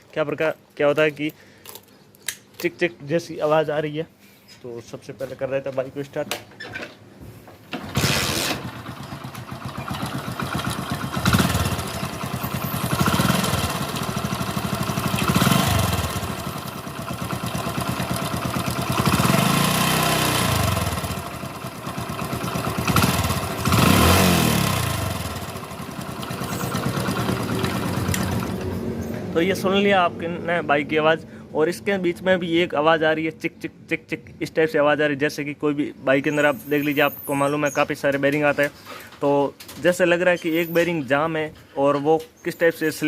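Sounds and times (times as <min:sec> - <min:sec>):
man talking: 0:00.0 - 0:01.4, 0:02.6 - 0:06.4, 0:29.3 - 0:43.0
motorcycle engine revving: 0:07.8 - 0:30.2
engine chirping: 0:07.8 - 0:32.3, 0:36.1 - 0:38.7, 0:40.3 - 0:41.2.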